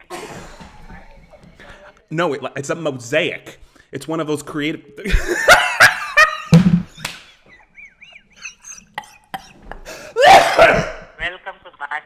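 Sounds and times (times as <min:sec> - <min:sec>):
man fake sneezing: 0:10.2 - 0:11.1.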